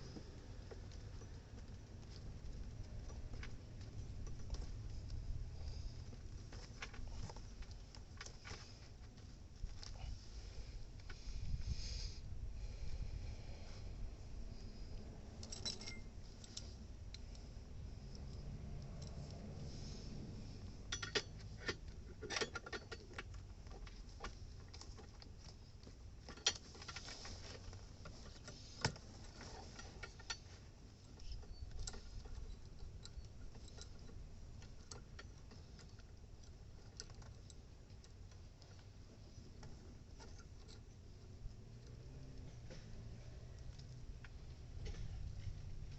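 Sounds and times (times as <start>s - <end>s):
metallic clicks of hand tools: 15.4s - 19.5s, 20.8s - 23.4s.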